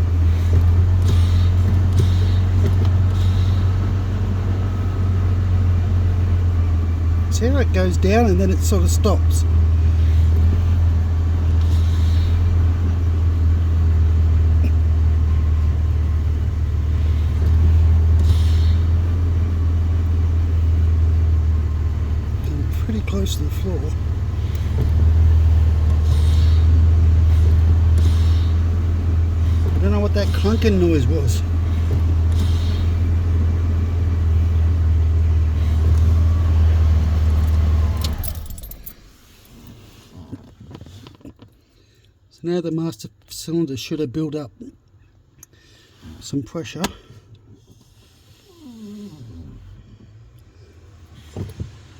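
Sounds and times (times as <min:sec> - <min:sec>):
engine idling with low hum: 0:00.0 - 0:51.9
faint brake hisses: 0:18.1 - 0:19.2, 0:25.6 - 0:28.8
keys jangling: 0:37.3 - 0:39.5.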